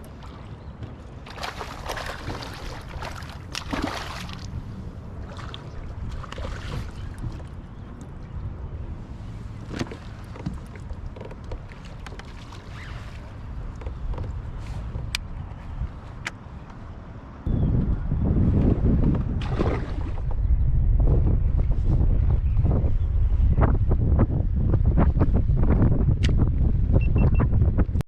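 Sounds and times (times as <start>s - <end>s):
water splashing around a kayak: 0.0s - 14.8s, 19.3s - 20.3s
wind rumble on microphone: 0.0s - 28.0s.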